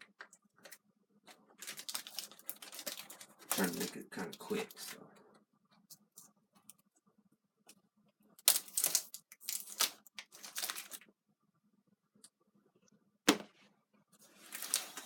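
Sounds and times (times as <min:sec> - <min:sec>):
packaging handled and opened: 0:00.1 - 0:04.9, 0:08.4 - 0:11.1, 0:14.2 - 0:15.0.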